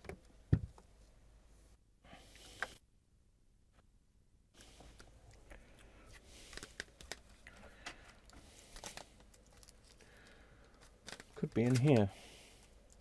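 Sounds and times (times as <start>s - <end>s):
packaging rustling and crinkling: 6.1s - 13.0s.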